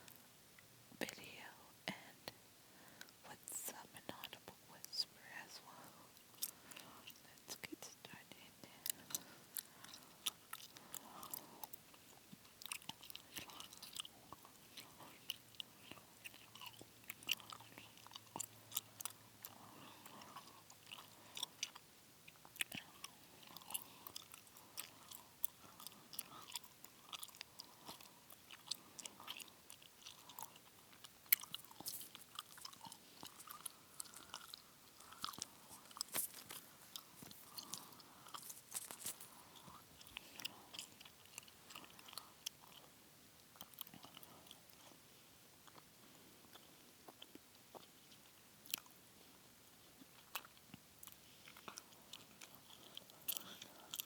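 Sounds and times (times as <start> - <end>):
gum chewing: 6.1 - 7.7, 8.6 - 45.0, 45.6 - 54.0.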